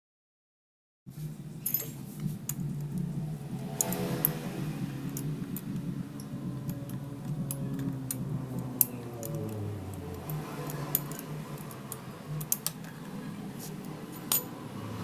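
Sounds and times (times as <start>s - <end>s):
low background hum: 1.1s - 15.0s
metallic clicks of tools: 5.1s - 13.2s, 14.1s - 14.6s.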